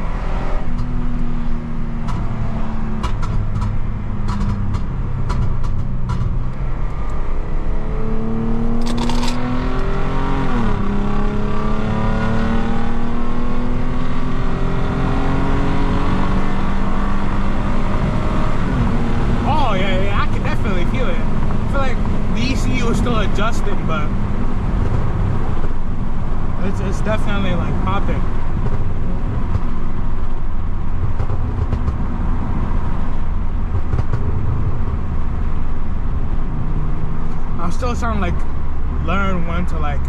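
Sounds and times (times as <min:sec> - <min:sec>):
car engine revving: 0:00.0 - 0:40.0
car exhaust pops: 0:02.0 - 0:06.6, 0:24.5 - 0:26.4, 0:28.3 - 0:34.9.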